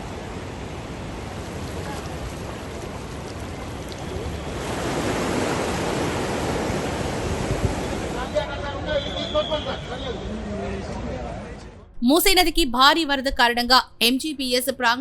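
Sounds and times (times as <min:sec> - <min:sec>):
floodwater rushing: 0:00.0 - 0:08.3.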